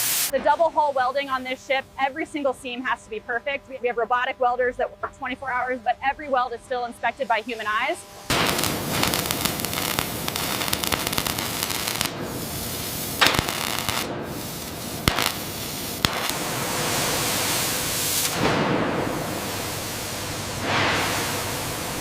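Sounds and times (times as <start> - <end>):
arc welding crackling hiss: 0.0 - 3.0, 6.3 - 22.0
welding pops: 8.2 - 21.6.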